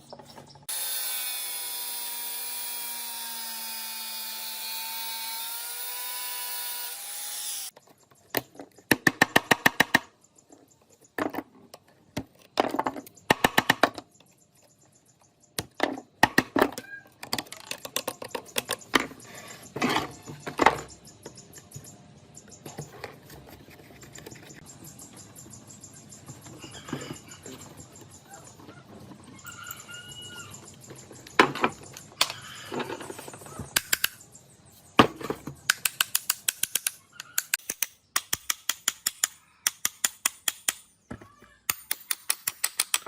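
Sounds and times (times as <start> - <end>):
power tool motor winding down: 0.7 - 7.7
rattling clicks of metal parts: 35.2 - 40.9, 41.7 - 43.0.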